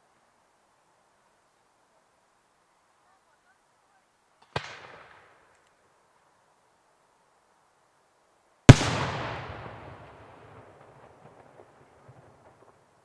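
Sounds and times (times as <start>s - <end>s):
firework bang with echo: 8.7s - 10.6s.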